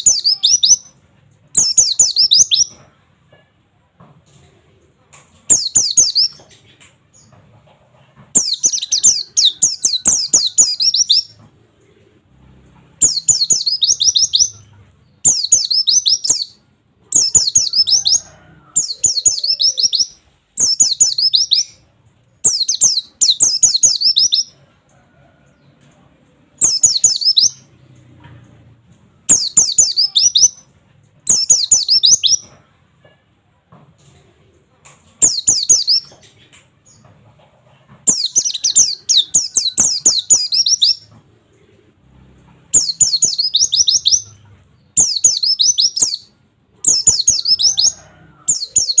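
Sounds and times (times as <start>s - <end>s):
bird singing rapid high notes: 0.0s - 0.9s, 1.6s - 2.8s, 5.5s - 6.4s, 8.4s - 11.4s, 13.0s - 14.6s, 15.2s - 16.6s, 18.8s - 21.8s, 22.4s - 24.5s, 26.6s - 27.7s, 29.3s - 30.6s, 31.3s - 32.4s, 42.8s - 44.4s, 45.0s - 46.3s.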